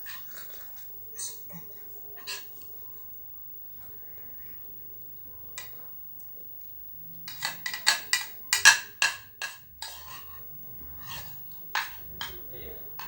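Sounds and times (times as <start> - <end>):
spoon tapping on a plate: 7.3 - 10.2, 11.8 - 12.4.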